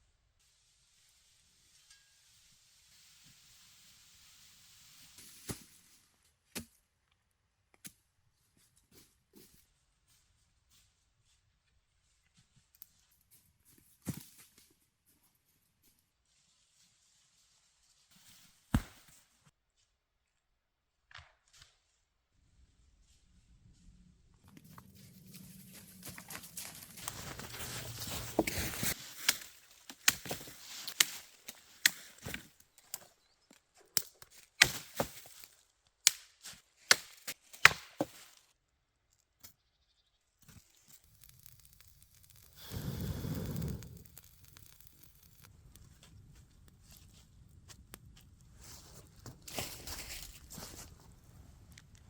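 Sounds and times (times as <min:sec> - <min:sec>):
sharp cracks and knocks of wood: 0:21.0 - 0:21.9, 0:26.0 - 0:38.4.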